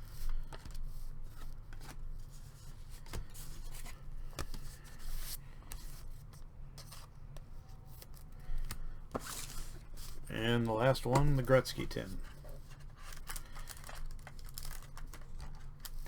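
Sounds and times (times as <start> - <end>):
cards being flipped: 7.9 - 16.0.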